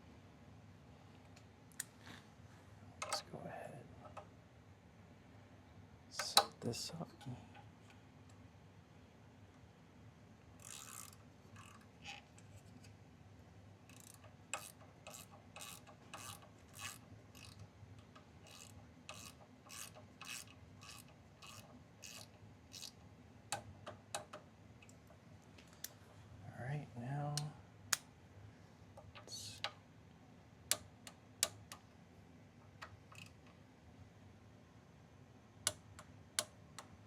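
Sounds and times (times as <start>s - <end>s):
hand ratchet clicking: 10.6s - 12.2s, 13.8s - 24.4s.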